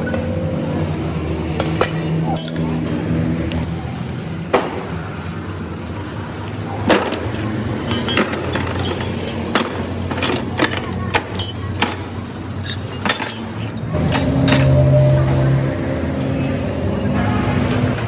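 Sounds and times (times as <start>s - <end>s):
traffic hum: 0.0s - 18.0s
vehicle engine drone: 0.0s - 18.0s
metal tools clinking on truck parts: 1.8s - 2.8s, 6.9s - 14.8s.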